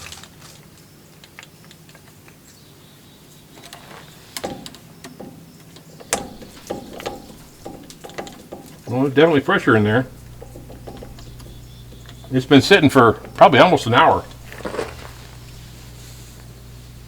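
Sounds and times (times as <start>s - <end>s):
metal fittings clinking: 3.6s - 16.5s.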